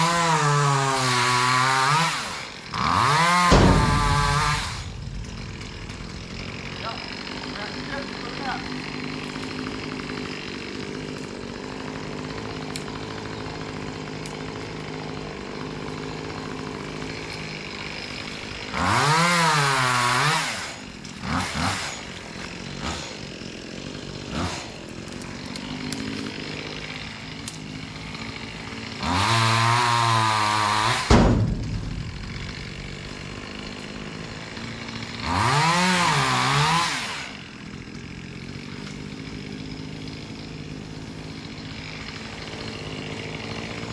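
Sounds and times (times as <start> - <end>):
chainsaw revving and idling: 0.0 - 43.9
sharp knock: 3.5 - 7.5, 31.1 - 33.2.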